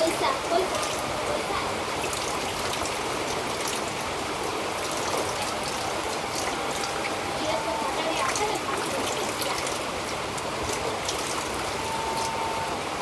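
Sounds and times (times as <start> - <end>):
flowing water rushing: 0.0 - 13.0
small clicks and splashes: 2.0 - 7.2, 8.1 - 12.4.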